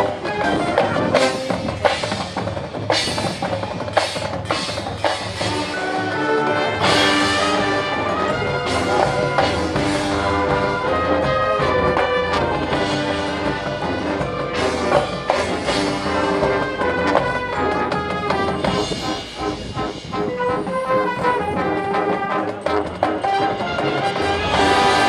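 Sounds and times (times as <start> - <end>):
percussion hits: 0.0 - 25.0
brass held chords: 5.4 - 25.0.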